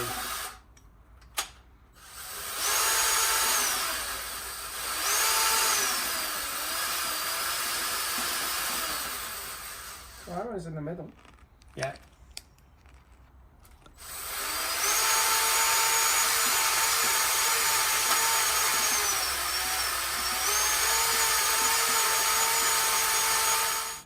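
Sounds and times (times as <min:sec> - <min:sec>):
electric drill whining: 0:02.0 - 0:10.3, 0:14.0 - 0:24.0.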